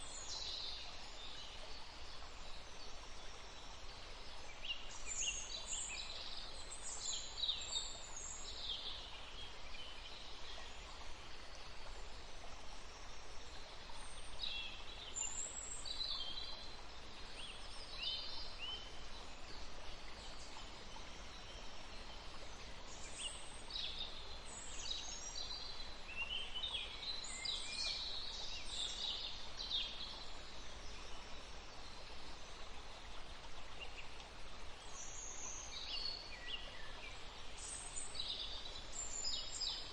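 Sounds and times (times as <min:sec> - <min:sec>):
small stream flowing: 0:00.0 - 0:39.9
songbirds chirping: 0:00.0 - 0:39.9.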